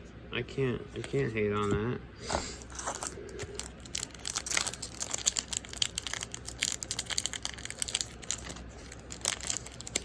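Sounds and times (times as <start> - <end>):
foil wrapper crinkling: 2.7 - 10.0.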